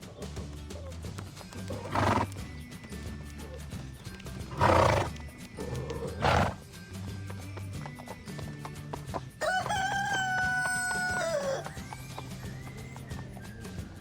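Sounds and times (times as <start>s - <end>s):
horse calling: 0.0s - 6.8s, 9.5s - 13.1s
background music sustained notes: 0.0s - 14.0s.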